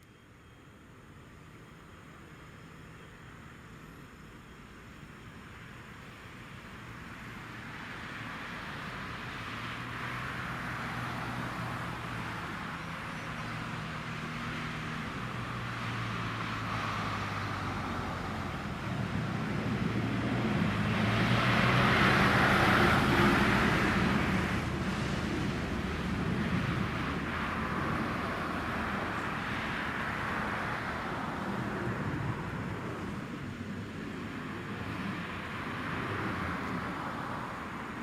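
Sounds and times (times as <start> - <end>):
jet airliner passing: 14.2 - 38.0.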